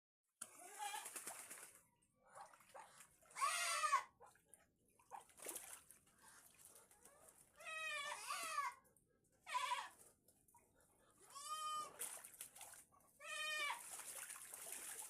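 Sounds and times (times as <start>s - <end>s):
farm animal cries: 3.4s - 4.1s, 7.6s - 8.8s, 9.4s - 10.0s, 11.2s - 12.0s, 13.2s - 13.8s.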